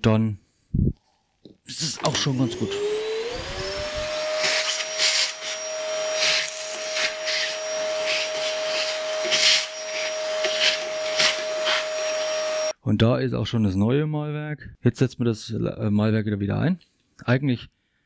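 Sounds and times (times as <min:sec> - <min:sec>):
vacuum cleaner motor whine: 0:01.8 - 0:12.8.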